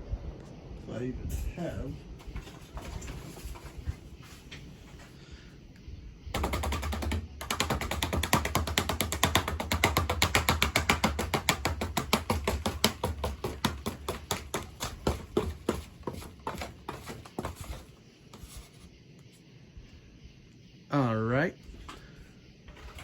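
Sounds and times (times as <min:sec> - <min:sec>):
ceiling fan hum: 0:00.0 - 0:23.0
ceiling fan clicking: 0:05.7 - 0:16.8.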